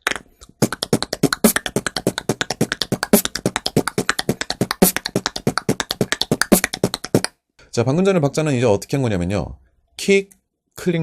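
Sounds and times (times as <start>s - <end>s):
beatboxed kick drum: 0.0s - 7.4s
beatboxed punch snare: 0.0s - 7.4s
beatboxed tongue click roll: 0.0s - 7.4s.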